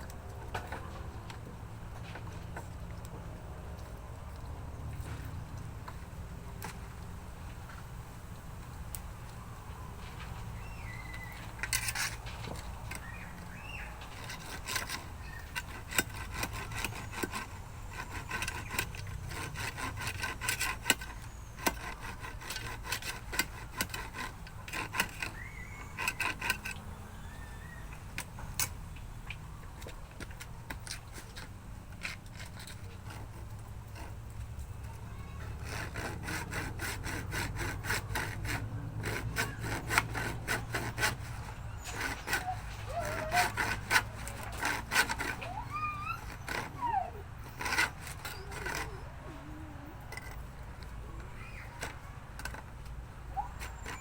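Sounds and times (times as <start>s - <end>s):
hand tool scraping: 10.0s - 28.8s, 29.6s - 54.0s
sharp clicks and knocks: 50.1s - 53.0s.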